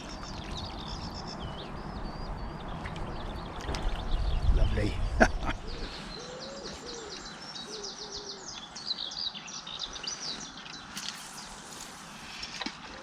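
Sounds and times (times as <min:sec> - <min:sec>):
pigeon cooing: 0:05.6 - 0:08.4.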